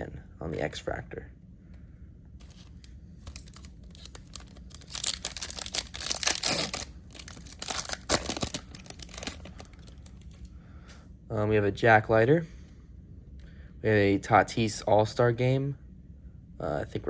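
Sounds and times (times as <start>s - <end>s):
foil wrapper tearing and crinkling: 3.2s - 10.0s.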